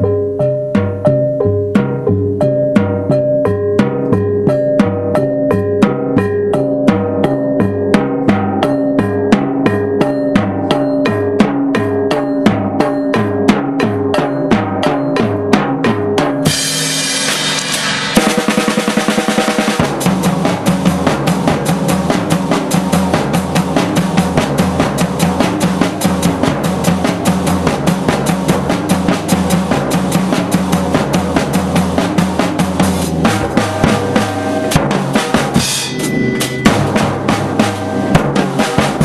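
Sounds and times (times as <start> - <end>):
drum kit playing fast rhythm: 0.0 - 39.0
cymbal wash ringing: 35.6 - 38.2.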